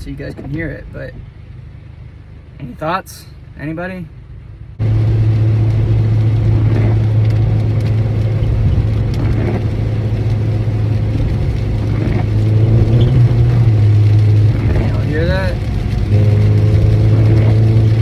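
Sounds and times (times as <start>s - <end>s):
car cabin low drone: 0.0s - 18.0s.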